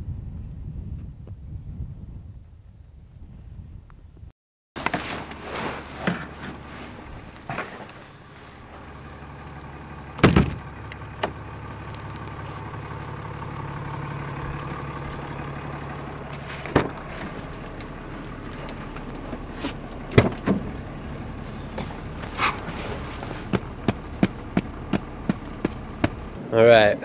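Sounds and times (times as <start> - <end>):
engine hum: 4.8 - 27.0
sharp knocks: 10.2 - 11.4, 23.5 - 26.2.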